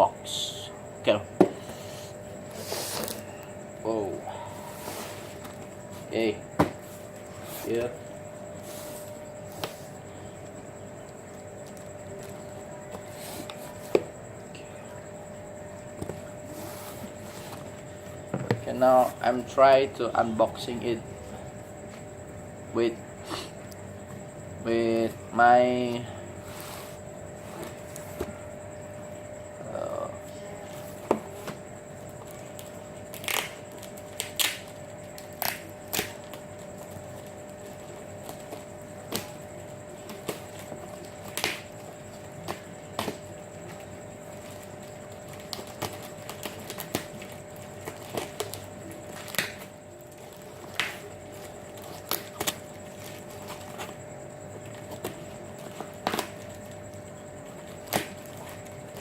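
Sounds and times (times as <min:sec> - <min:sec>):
cardboard and tape cracking: 0:32.4 - 0:36.4, 0:40.0 - 0:41.7, 0:45.2 - 0:54.0.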